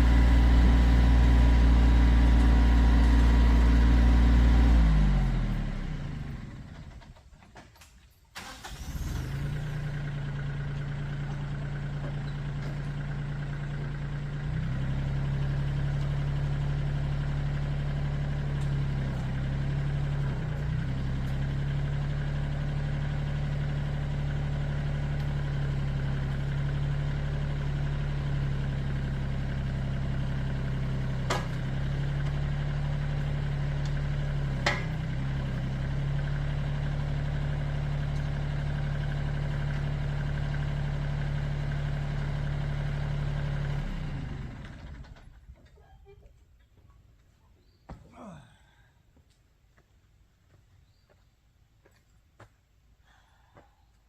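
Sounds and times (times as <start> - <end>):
diesel tractor engine stopping: 0.0 - 45.6
engine starting and running: 0.0 - 45.8.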